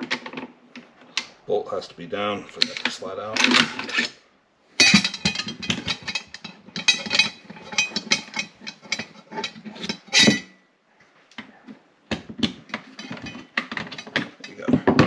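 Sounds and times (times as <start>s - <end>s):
metallic clicks and rattles of rifle parts: 4.8s - 10.4s.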